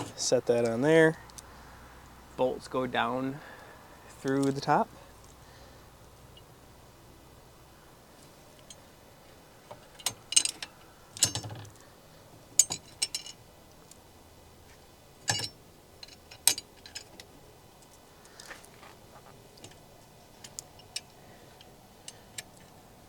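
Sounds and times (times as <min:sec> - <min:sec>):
steel bolts clinking on metal: 0:09.8 - 0:11.8, 0:12.6 - 0:13.4, 0:15.2 - 0:17.3.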